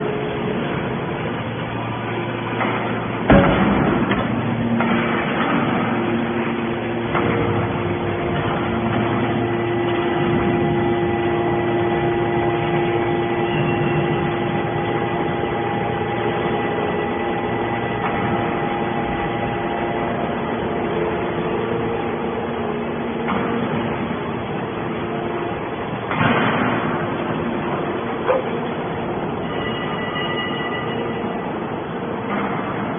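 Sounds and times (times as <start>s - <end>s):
hydraulic baler humming: 0.0s - 32.9s
loud metal bang: 2.5s - 19.4s, 26.0s - 28.1s.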